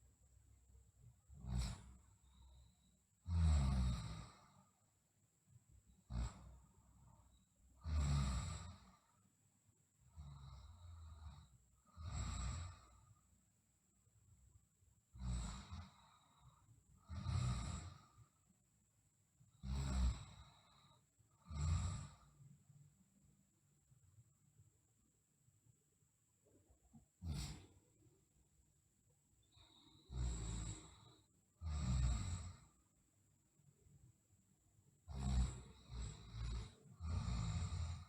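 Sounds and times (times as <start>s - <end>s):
girl snoring: 1.3s - 2.4s, 3.3s - 4.6s, 10.2s - 13.1s, 15.2s - 18.2s, 19.6s - 22.4s, 27.2s - 27.8s, 29.6s - 32.8s, 35.1s - 38.0s.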